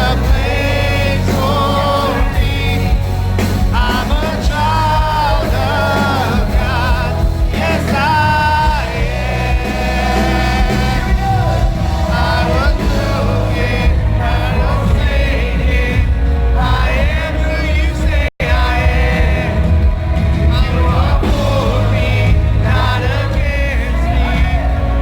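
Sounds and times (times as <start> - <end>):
band playing worship music: 0.0 - 25.0
person singing: 0.0 - 25.0.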